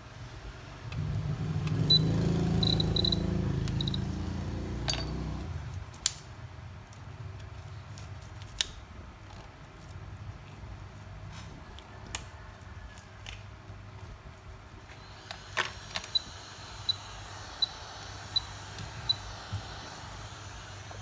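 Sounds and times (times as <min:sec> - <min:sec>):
machine hum: 0:00.8 - 0:05.9, 0:14.9 - 0:21.0.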